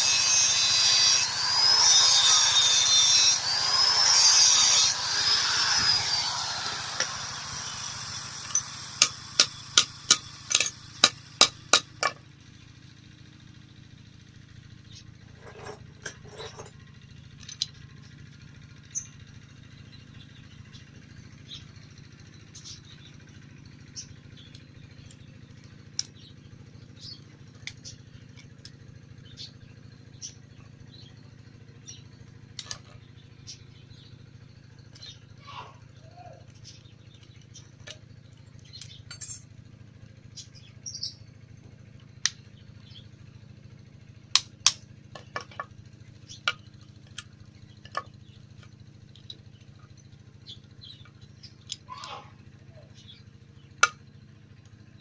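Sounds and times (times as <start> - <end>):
power tool winding down: 0.0 - 12.2.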